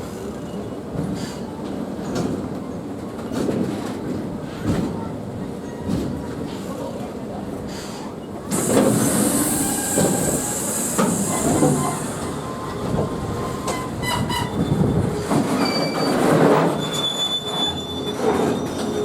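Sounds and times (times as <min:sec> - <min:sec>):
rumble of train wagons: 0:00.0 - 0:19.0
train brakes squealing: 0:07.7 - 0:19.0.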